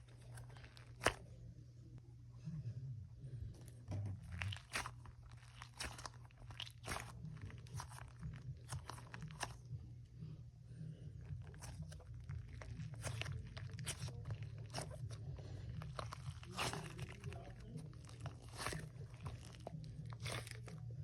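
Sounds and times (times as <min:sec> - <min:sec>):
low steady hum: 0:00.0 - 0:21.0
plastic packaging crinkling: 0:04.2 - 0:09.6.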